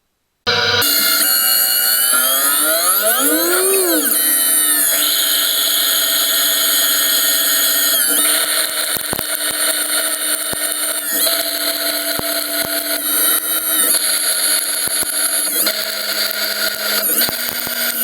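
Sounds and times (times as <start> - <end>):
lathe spindle whine: 0.5 - 18.0
sharp ticks: 8.1 - 18.0.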